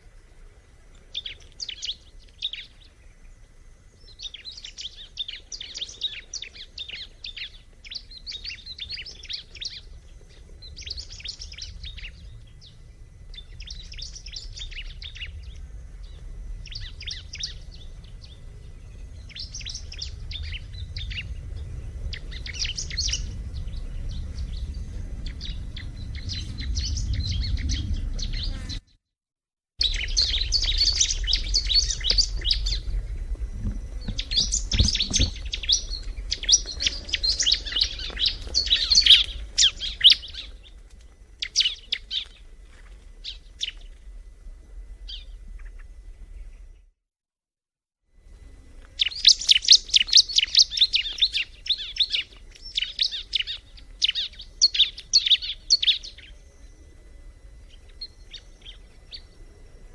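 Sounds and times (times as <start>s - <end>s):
low background rumble: 0.0s - 28.9s, 29.8s - 47.0s
bird singing scratchy chirps: 1.0s - 29.0s, 29.8s - 44.0s, 48.3s - 59.9s.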